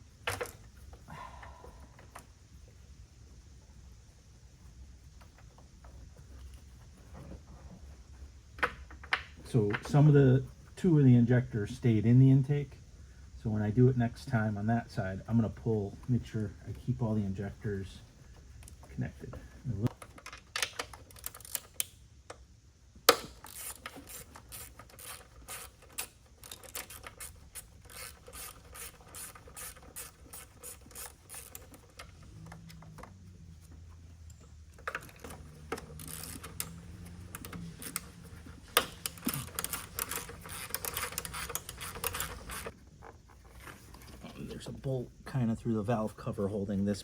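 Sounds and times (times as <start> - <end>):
hand ratchet clicking: 19.8 - 22.4, 23.1 - 42.8.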